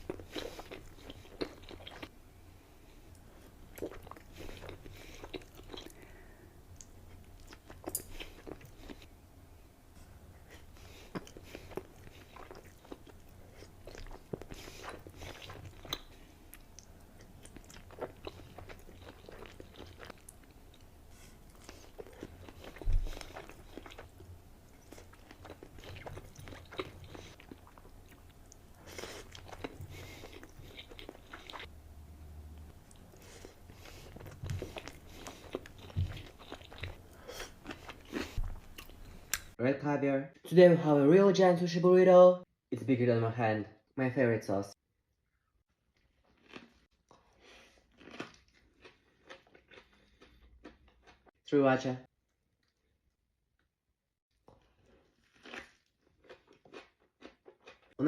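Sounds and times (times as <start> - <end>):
chewing with crisp crunches: 0.0 - 2.1, 3.0 - 9.1, 10.4 - 31.7, 32.6 - 39.6, 45.2 - 51.3, 54.3 - 58.0.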